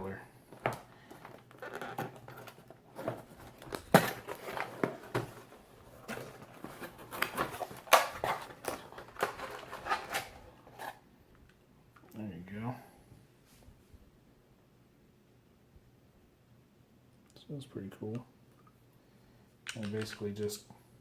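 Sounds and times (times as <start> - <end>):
plastic packaging crinkling: 0.5 - 11.0.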